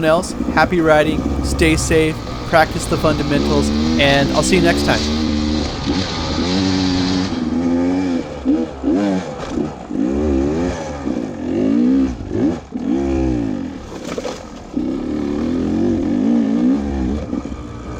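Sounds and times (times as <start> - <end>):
dirt bike engine revving: 0.0 - 5.3.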